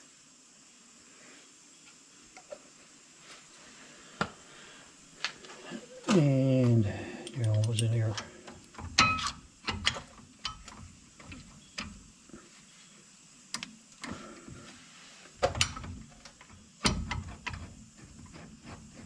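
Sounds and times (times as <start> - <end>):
metal parts clinking and knocking: 7.2 - 8.2.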